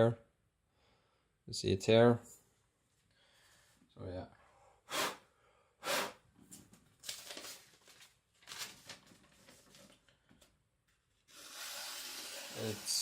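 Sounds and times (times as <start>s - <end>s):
rustling handling noises: 6.4s - 10.5s.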